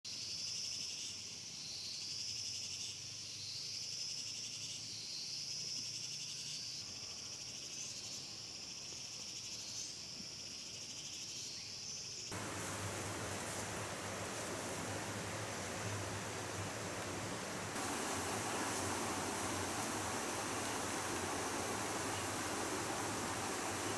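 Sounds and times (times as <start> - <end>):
insect chorus trilling: 0.2 - 23.9
steady rushing noise: 12.3 - 23.9.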